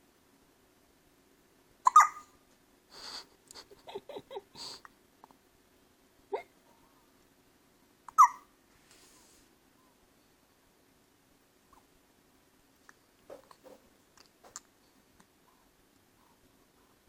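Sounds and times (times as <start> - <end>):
baby hiccupping: 1.8 - 2.4, 8.1 - 8.4.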